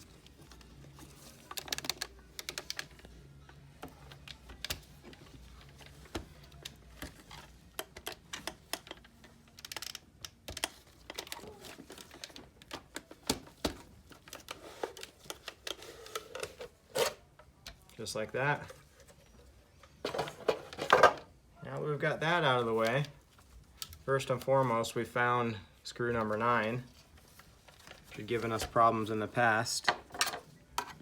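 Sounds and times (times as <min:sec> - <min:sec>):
plastic and metal parts clicking: 0:01.4 - 0:17.8.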